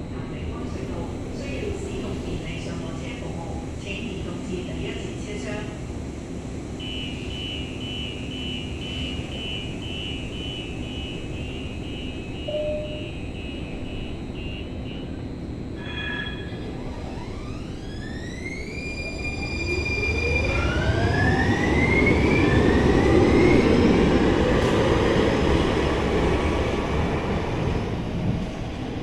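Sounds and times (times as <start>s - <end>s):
train traction motors whining: 8.6s - 24.8s.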